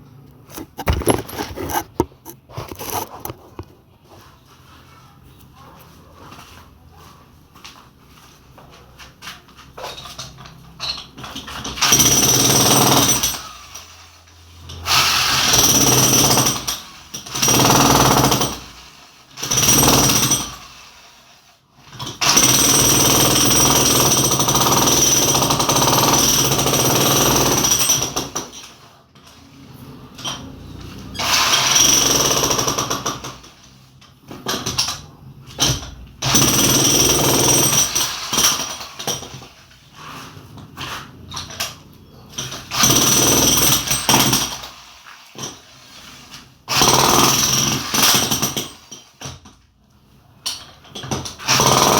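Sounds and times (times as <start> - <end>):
jackhammer chipping concrete: 11.3 - 13.8, 14.8 - 18.8, 19.4 - 20.7, 22.0 - 28.6, 31.1 - 33.5, 35.6 - 39.4, 42.4 - 44.7, 46.6 - 49.0, 50.9 - 51.9.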